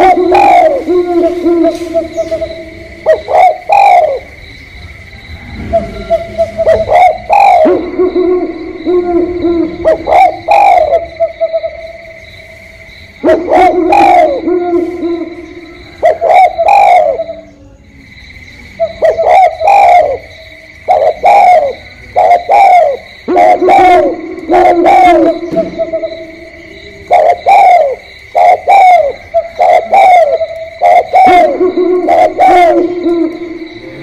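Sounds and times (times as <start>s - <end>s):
steady high-pitched tone: 0.0s - 4.3s, 5.4s - 17.6s, 22.4s - 28.0s, 29.7s - 34.0s
doves cooing: 0.0s - 17.6s, 18.8s - 34.0s.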